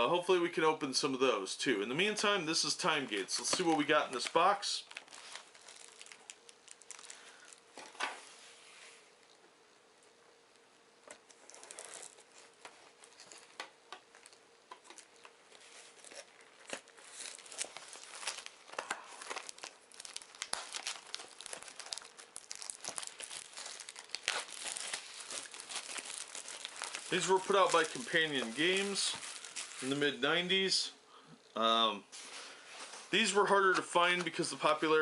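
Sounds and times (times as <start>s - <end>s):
plastic shrink-wrap crinkling and tearing: 3.0s - 8.0s, 10.5s - 30.2s.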